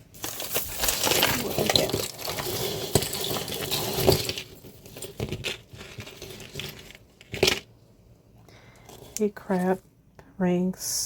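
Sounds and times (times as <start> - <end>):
plastic bag rustling: 0.0 - 7.6
metal jewelry clinking: 0.0 - 7.7.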